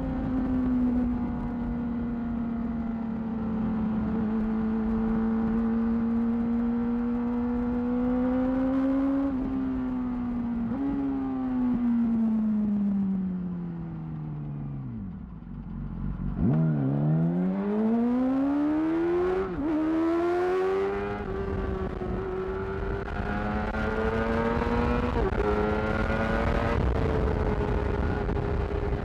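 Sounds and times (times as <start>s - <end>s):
motorcycle engine accelerating: 0.0s - 29.0s.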